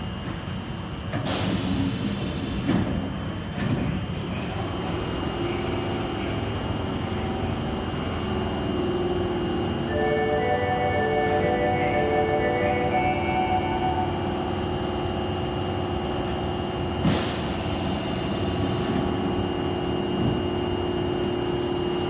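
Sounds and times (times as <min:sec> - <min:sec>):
train noise with low hum: 0:00.0 - 0:22.0
air hiss of train doors: 0:01.1 - 0:03.1, 0:17.0 - 0:19.3.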